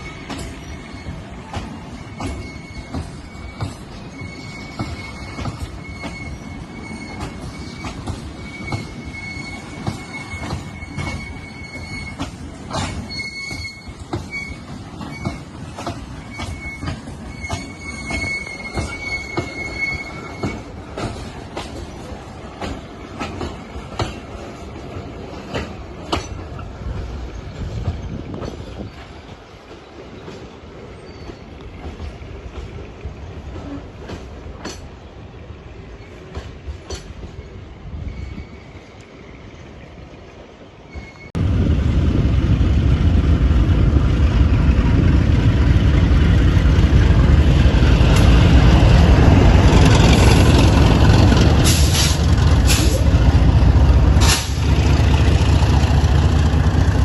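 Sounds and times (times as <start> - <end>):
train wheels squealing: 0.0 - 39.8, 40.6 - 41.4.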